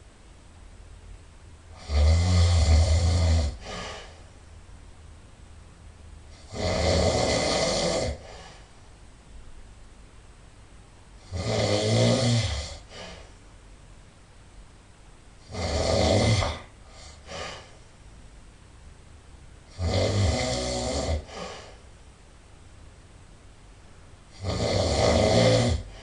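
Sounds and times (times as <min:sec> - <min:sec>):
person snoring loudly: 0:01.7 - 0:04.1, 0:06.3 - 0:08.6, 0:11.2 - 0:13.2, 0:15.4 - 0:17.7, 0:19.7 - 0:21.8, 0:24.3 - 0:26.0
faint puff of breath: 0:03.6 - 0:04.3, 0:16.5 - 0:17.9, 0:21.3 - 0:21.8.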